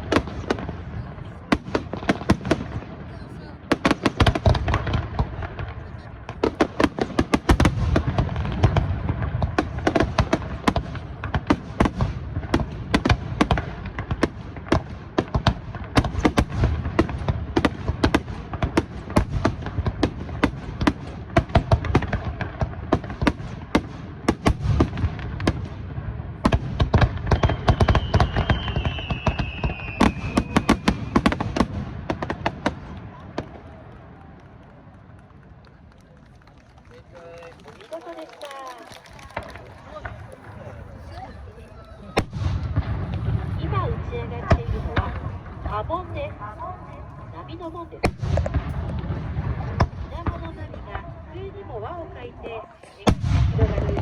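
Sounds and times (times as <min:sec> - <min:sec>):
deep fireworks booms: 0:00.0 - 0:35.3, 0:42.1 - 0:52.4, 0:53.0 - 0:54.0
fireworks crackling and popping: 0:00.0 - 0:54.0
falling whistle: 0:27.4 - 0:31.2.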